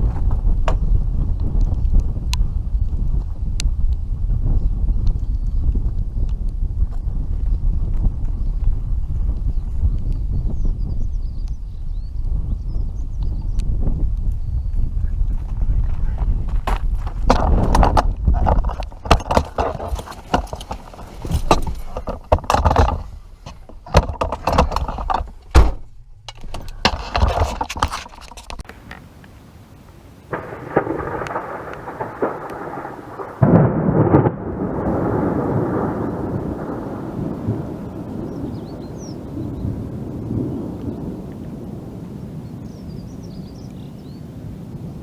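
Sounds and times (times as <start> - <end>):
rolling thunder rumble: 0.0 - 27.8, 30.2 - 45.0
thunder cracking: 14.8 - 28.6, 30.3 - 43.1.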